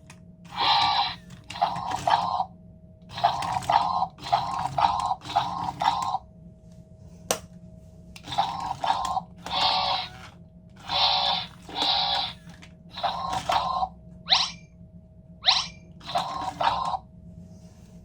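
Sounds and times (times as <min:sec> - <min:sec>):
toy robot electronic chirps: 0:00.5 - 0:02.5, 0:03.1 - 0:06.2, 0:08.3 - 0:14.6, 0:15.4 - 0:17.0.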